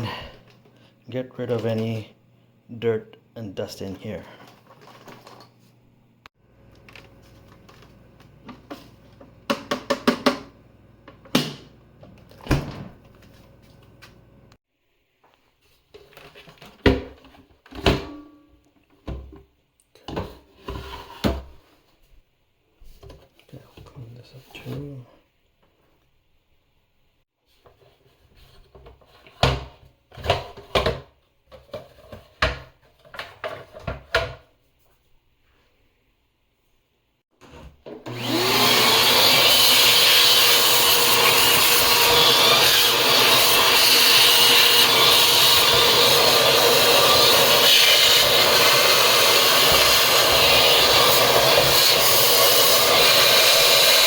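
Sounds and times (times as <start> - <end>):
plastic parts rustling: 4.1 - 5.7.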